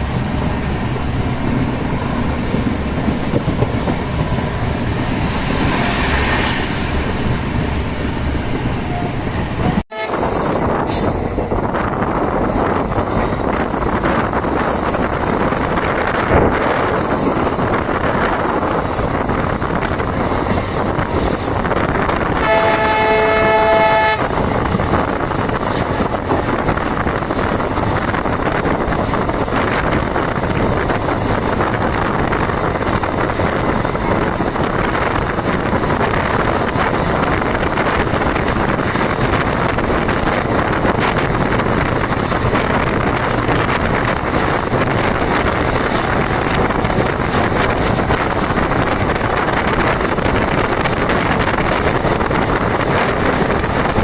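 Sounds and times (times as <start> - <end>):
diesel locomotive engine running: 0.0 - 54.0
train rumble: 0.0 - 54.0
locomotive horn: 9.9 - 10.6, 22.3 - 24.4.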